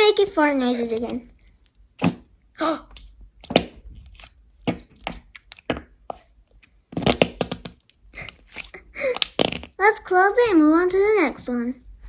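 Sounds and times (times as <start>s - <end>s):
noise putty squished popping: 3.0s - 5.9s.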